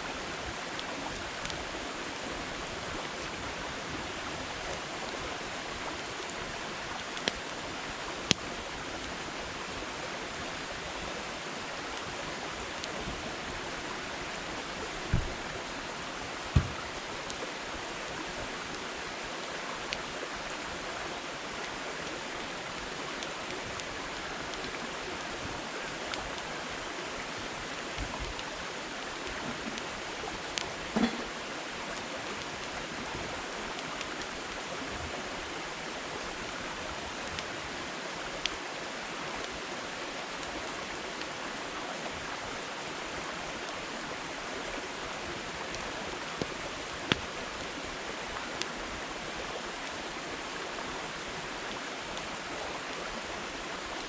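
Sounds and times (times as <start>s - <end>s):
campfire flames hissing: 0.1s - 54.0s
fire crackles and pops: 0.2s - 20.6s, 21.3s - 34.6s, 37.0s - 41.4s, 45.5s - 48.8s.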